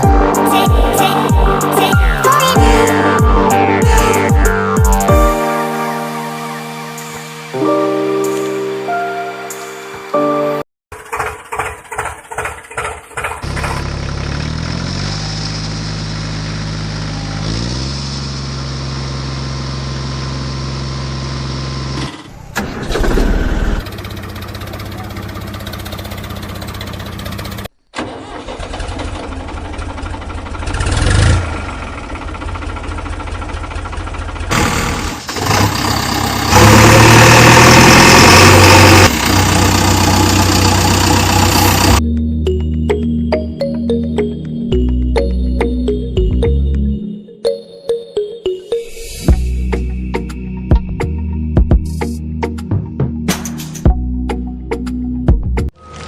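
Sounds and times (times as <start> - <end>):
vehicle engine cranking and running: 10.9 - 42.0.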